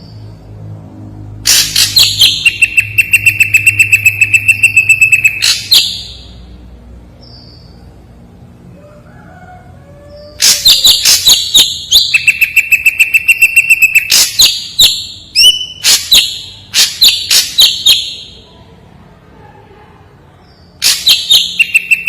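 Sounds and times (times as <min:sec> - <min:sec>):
bird singing sharp high notes: 0:01.5 - 0:06.4, 0:10.4 - 0:18.4, 0:20.8 - 0:22.0.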